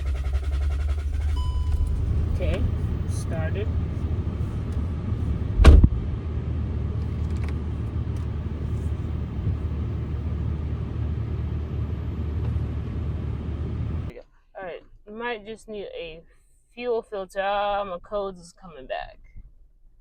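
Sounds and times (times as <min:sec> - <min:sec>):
car engine idling: 0:00.0 - 0:14.1
sharp thump: 0:05.4 - 0:06.2.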